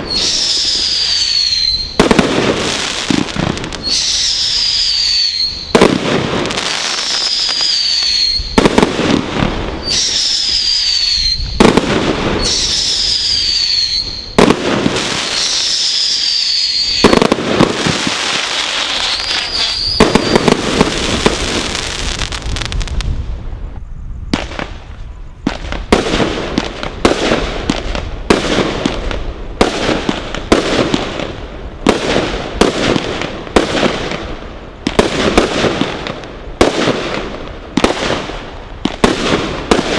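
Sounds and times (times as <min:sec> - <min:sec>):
firework whistle falling in pitch: 0:00.0 - 0:02.1, 0:03.8 - 0:05.9, 0:06.9 - 0:08.6, 0:09.8 - 0:11.6, 0:12.3 - 0:14.4, 0:15.3 - 0:17.4, 0:18.6 - 0:20.6
firework sharp bangs: 0:00.0 - 0:23.1, 0:24.3 - 0:39.9
firework crackling: 0:00.0 - 0:39.9.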